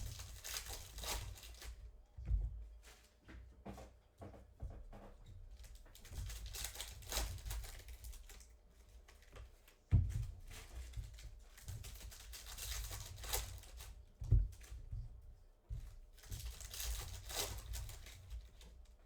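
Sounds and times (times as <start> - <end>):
wrappers tearing and crinkling: 0.0 - 1.7, 6.3 - 8.4, 11.9 - 13.9, 16.5 - 18.4.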